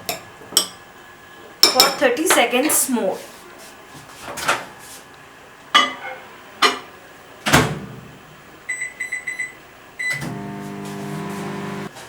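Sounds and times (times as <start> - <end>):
microwave beeps: 8.7 - 11.9.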